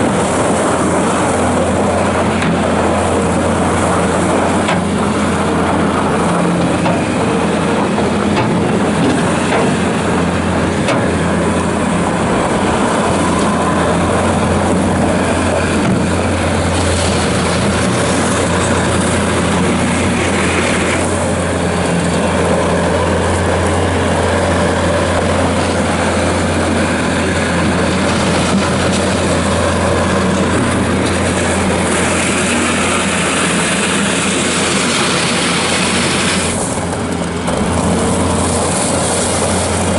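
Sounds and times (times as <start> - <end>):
loader diesel engine running: 0.0 - 39.9.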